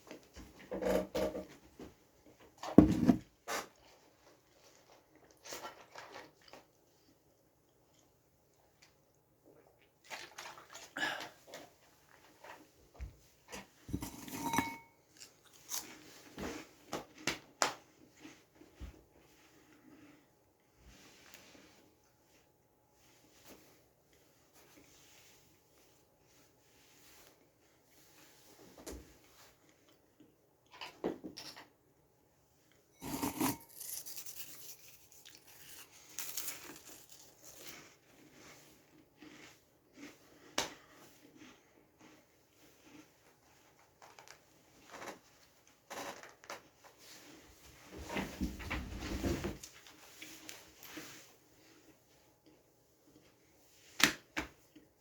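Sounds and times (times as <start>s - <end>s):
dry crackers being chewed: 15.1s - 16.1s, 33.1s - 44.4s.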